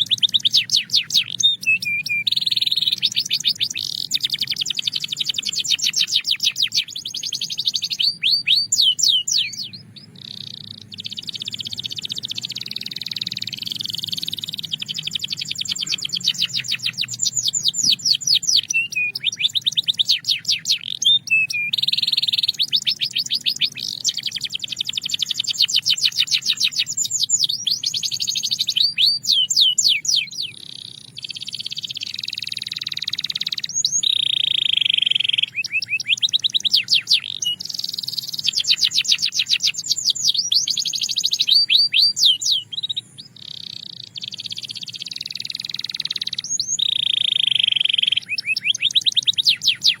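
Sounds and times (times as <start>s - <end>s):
canary singing: 0.0s - 50.0s.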